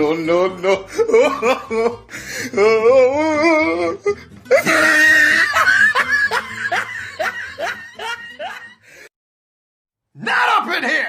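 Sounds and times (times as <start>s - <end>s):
person laughing: 0.6s - 2.9s, 3.8s - 8.9s.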